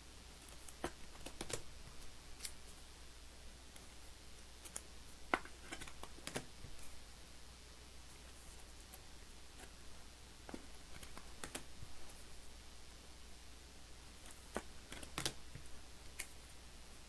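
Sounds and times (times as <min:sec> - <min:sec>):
trading cards clicking and tapping: 0:00.5 - 0:02.6, 0:04.7 - 0:06.8, 0:10.5 - 0:11.7, 0:14.3 - 0:16.4.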